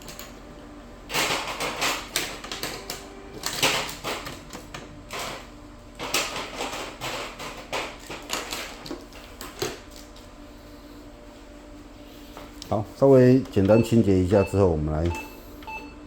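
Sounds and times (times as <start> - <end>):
rubbing and rustling wipe strokes: 10.2 - 12.6.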